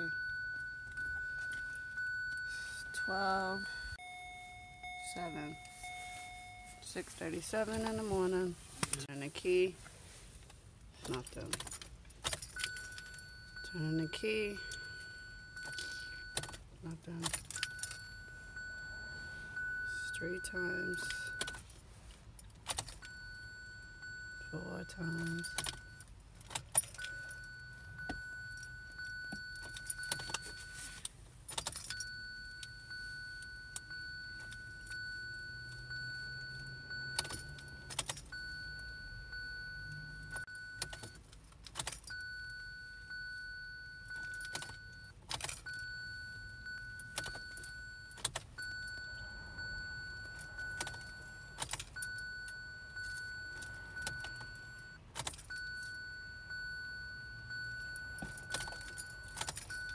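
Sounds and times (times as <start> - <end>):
car warning tone: 0.0 - 10.2, 11.0 - 59.9
car keys jangling and clicking: 0.0 - 59.9.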